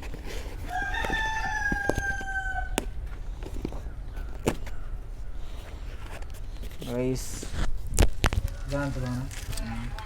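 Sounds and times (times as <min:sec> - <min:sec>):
rooster crowing: 0:00.6 - 0:02.8.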